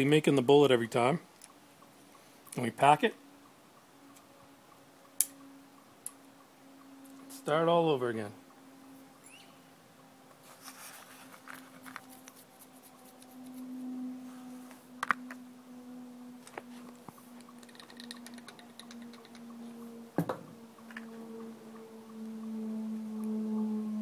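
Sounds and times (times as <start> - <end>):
steady hum: 0.0 - 24.0
revolver metallic clicks and taps: 17.3 - 19.6.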